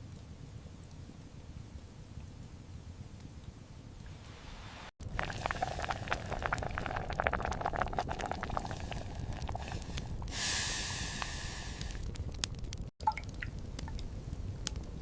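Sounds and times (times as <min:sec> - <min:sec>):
liquid bubbling in a pot: 0:05.0 - 0:10.3, 0:13.0 - 0:15.0.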